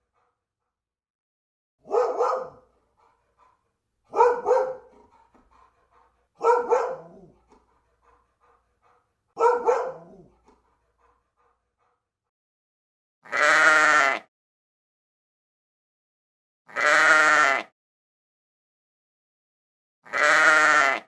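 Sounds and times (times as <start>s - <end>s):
dog barking: 1.8s - 12.3s.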